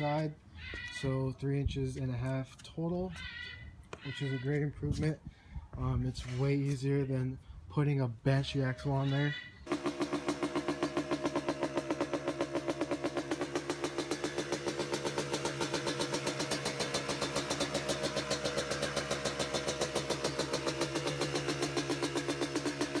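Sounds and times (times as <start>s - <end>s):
two-stroke engine idling: 9.7s - 23.0s.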